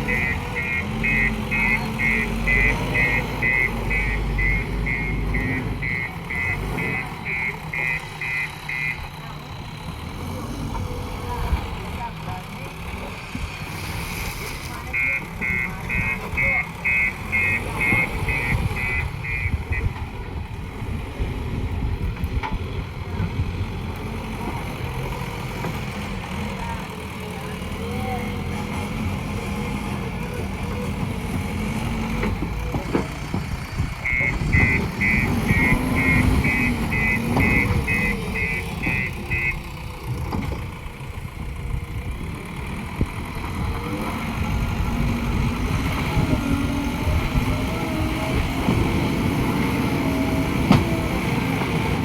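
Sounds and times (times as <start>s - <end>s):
reversing alarm beeps: 0.0s - 9.0s, 15.0s - 20.0s, 34.0s - 39.6s
diesel engine rumbling: 0.0s - 52.0s.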